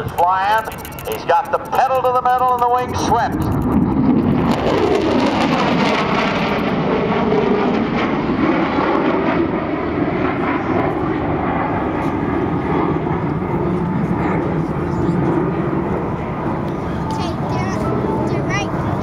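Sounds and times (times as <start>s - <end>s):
jet bomber roaring flyby: 0.0s - 19.0s.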